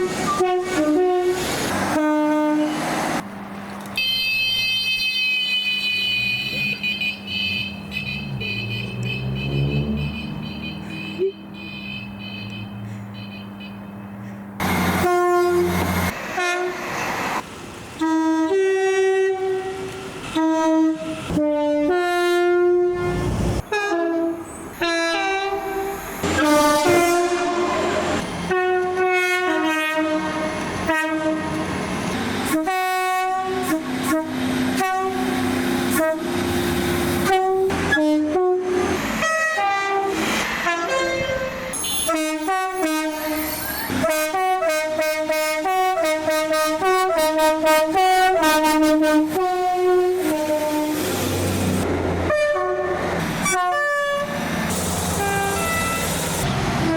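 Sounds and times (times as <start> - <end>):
train air horn blasts: 0.2 - 2.8, 14.6 - 16.8, 18.0 - 31.6, 32.5 - 36.6, 37.2 - 51.2, 52.2 - 54.4, 55.2 - 56.2.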